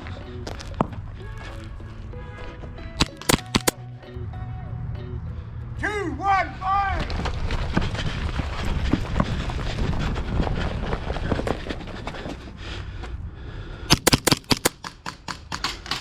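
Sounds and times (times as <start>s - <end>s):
crackly handling noise: 3.0s - 3.8s
rapid airsoft gunfire: 3.0s - 3.8s, 13.9s - 15.5s.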